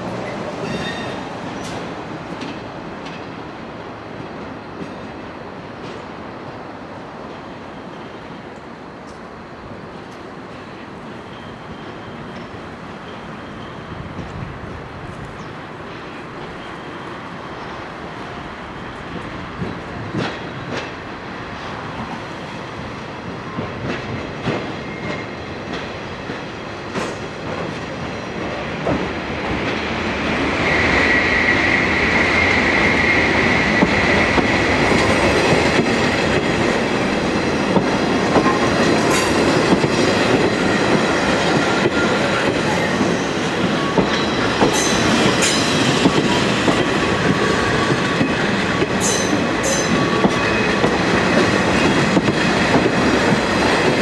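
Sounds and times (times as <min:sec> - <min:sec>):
train wheels clicking over rail joints: 0:32.8 - 0:54.0
high wheel squeal: 0:38.7 - 0:50.9.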